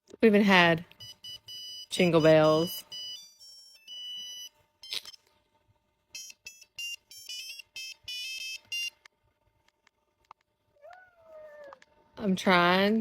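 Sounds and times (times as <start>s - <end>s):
monophonic phone ringtone beeps: 1.0s - 5.2s, 6.1s - 9.0s.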